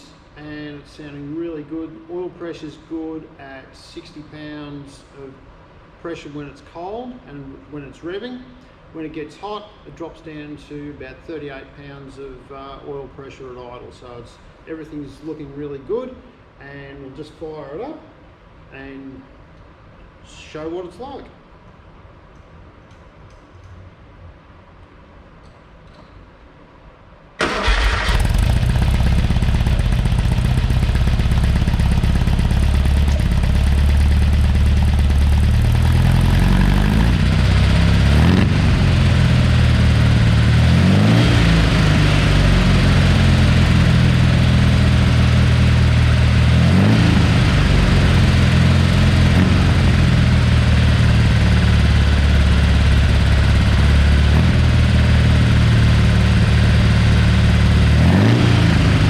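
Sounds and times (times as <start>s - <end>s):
car engine revving: 27.4s - 59.0s
car engine starting and idling: 27.4s - 59.0s.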